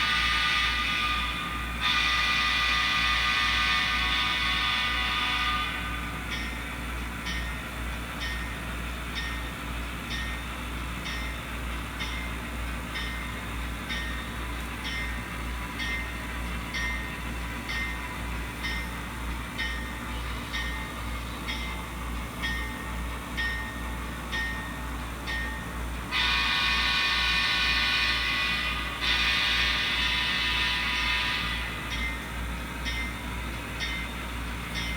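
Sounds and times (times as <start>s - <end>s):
locomotive horn: 0.0s - 6.2s, 26.1s - 31.8s
locomotive bell ringing: 6.0s - 26.4s, 30.7s - 34.9s.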